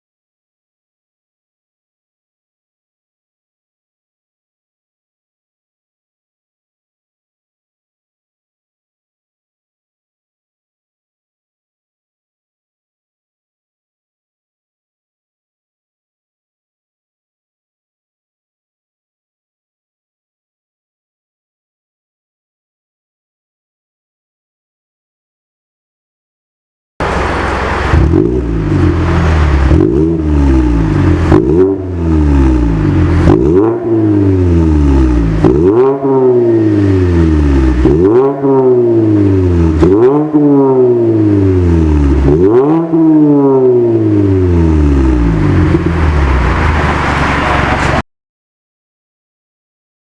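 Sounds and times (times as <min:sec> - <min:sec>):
car engine revving: 0:27.0 - 0:48.0.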